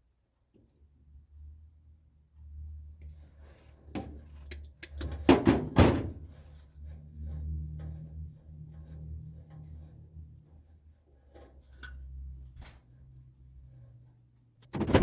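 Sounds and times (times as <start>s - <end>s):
knocks and thunks: 14.6s - 15.0s.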